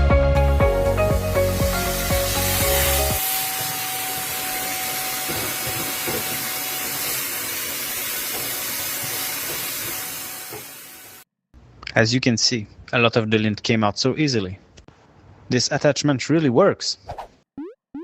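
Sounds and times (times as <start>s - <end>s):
background music: 0.0s - 3.2s
vacuum cleaner rushing hiss: 1.0s - 11.2s.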